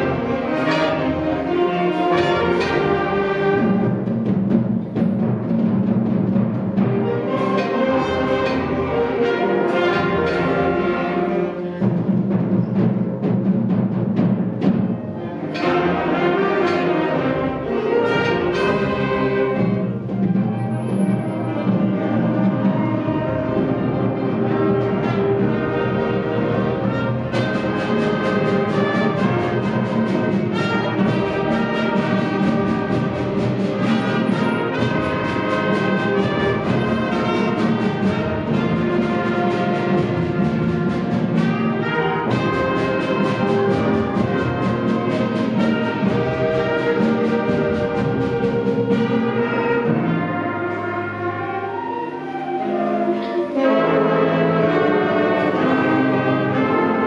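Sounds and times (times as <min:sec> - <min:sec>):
brass: 0:00.0 - 0:57.0
concert band playing: 0:00.0 - 0:57.0
percussion beat: 0:22.8 - 0:50.2.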